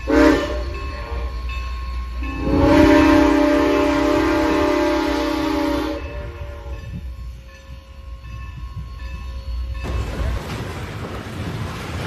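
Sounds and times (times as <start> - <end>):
locomotive whistle blast: 0.0 - 7.1.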